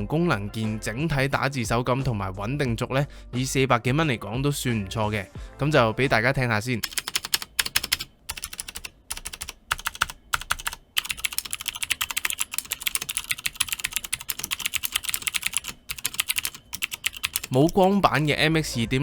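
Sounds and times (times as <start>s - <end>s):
mechanical keyboard typing: 6.8s - 18.4s.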